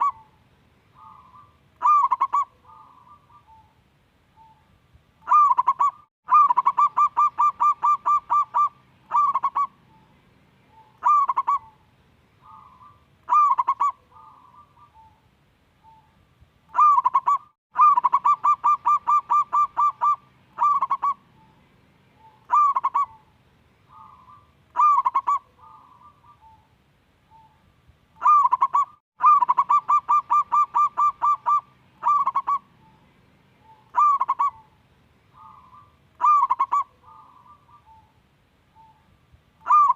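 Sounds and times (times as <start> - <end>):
dove cooing: 0.0 - 3.8, 5.2 - 10.1, 10.7 - 11.8, 12.4 - 15.2, 16.7 - 21.6, 22.2 - 26.7, 28.2 - 33.0, 33.6 - 38.2, 38.8 - 39.9.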